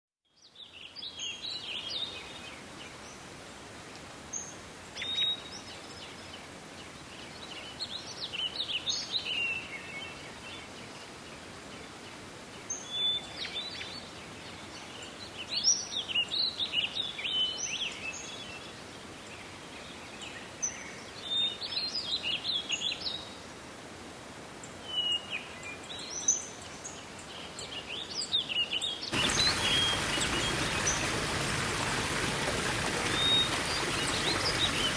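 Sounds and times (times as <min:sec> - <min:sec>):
faint hiss: 0:29.1 - 0:34.9
rushing noise: 0:29.2 - 0:34.9.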